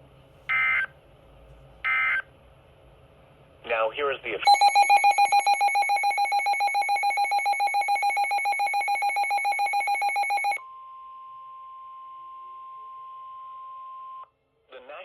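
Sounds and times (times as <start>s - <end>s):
steady single alarm tone: 4.5s - 14.2s.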